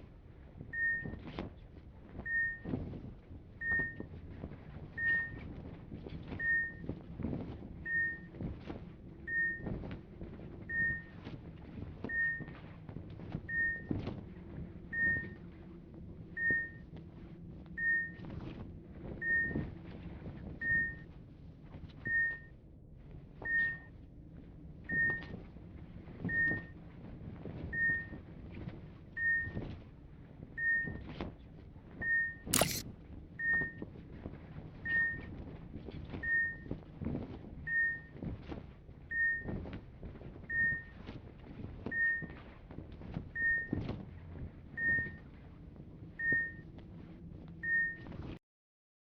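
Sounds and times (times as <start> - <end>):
medical equipment beeping: 32.6 - 32.8.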